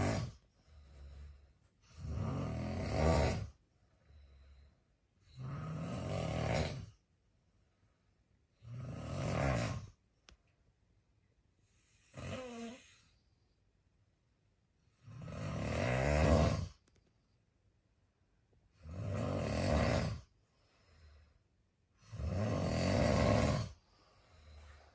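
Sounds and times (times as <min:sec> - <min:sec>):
soft breath: 0:00.0 - 0:01.9, 0:03.5 - 0:05.2, 0:20.3 - 0:21.7, 0:23.8 - 0:24.9
man snoring: 0:00.0 - 0:03.6, 0:05.2 - 0:07.0, 0:08.6 - 0:10.0, 0:11.9 - 0:13.1, 0:15.0 - 0:16.8, 0:18.8 - 0:21.3, 0:22.0 - 0:24.9.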